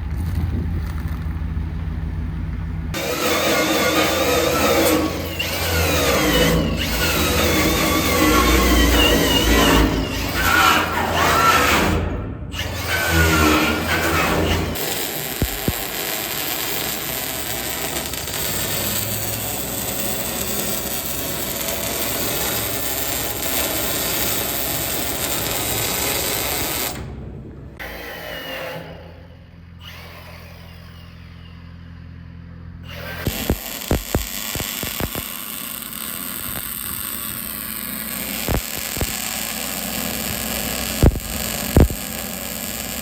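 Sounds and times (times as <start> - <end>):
low hum: 0.0 - 35.2
welding crackling hiss: 3.0 - 11.6, 12.8 - 27.0, 33.0 - 43.0.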